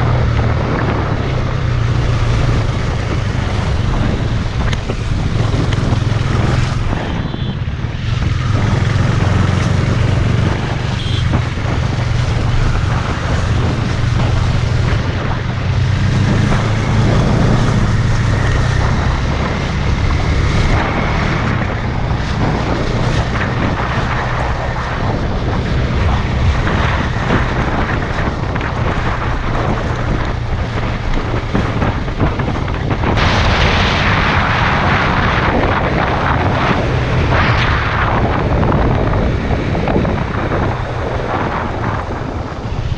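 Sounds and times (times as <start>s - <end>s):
motorcycle engine running: 0.0s - 33.5s
wind buffeting microphone: 0.0s - 42.9s.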